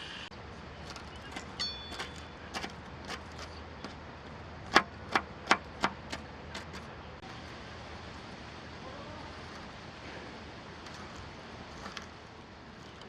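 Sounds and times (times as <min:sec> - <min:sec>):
metallic clink: 0:01.2 - 0:02.5.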